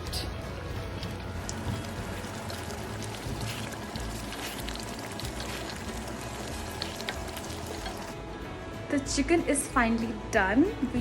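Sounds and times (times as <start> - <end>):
background music: 0.0 - 11.0
food sizzling in a frying pan: 1.6 - 8.2.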